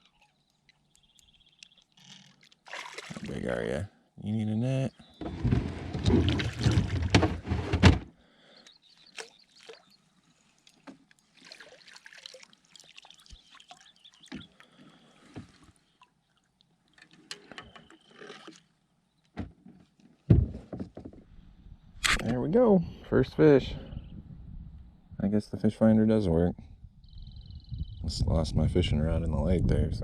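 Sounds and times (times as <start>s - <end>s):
water splashing: 0.0s - 3.6s, 5.5s - 7.5s, 9.1s - 17.2s, 17.8s - 18.8s.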